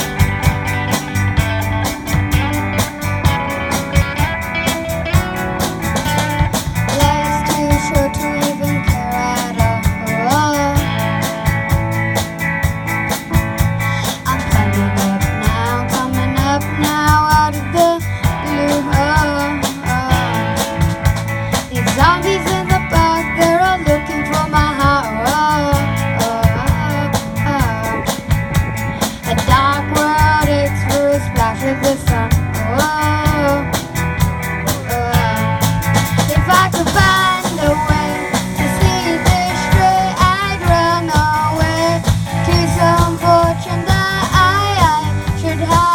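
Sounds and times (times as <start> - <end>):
drum kit beat: 0.0 - 45.9
rock band playing: 0.0 - 45.9
person singing: 6.2 - 11.5, 13.8 - 20.8, 21.5 - 28.2, 29.0 - 33.8, 34.7 - 45.9.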